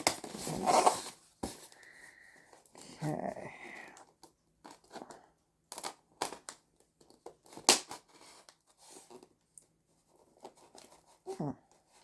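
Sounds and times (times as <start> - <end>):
cardboard and foam scraping: 0.0 - 1.6.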